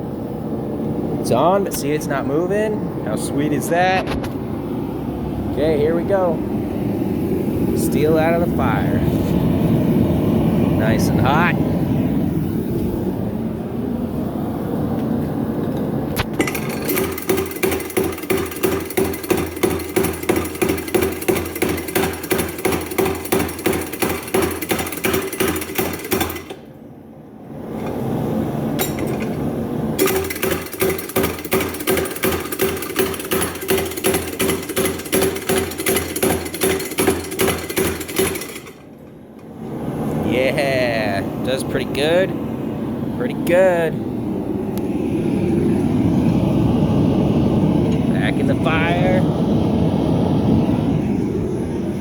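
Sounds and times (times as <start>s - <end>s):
power hammer pounding hot steel: 16.2s - 26.8s, 27.8s - 39.1s.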